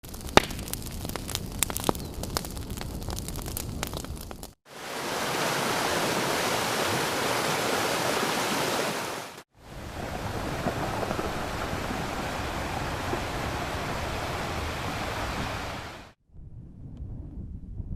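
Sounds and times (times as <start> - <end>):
rushing noise with sharp crackles: 0.0 - 16.2
falling water rushing: 4.7 - 16.2
low rough rush of surf: 4.7 - 16.2.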